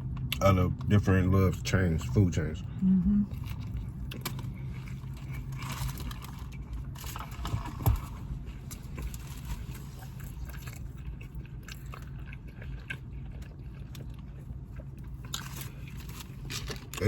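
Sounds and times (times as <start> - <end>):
chewing and biting food: 3.3 - 17.0.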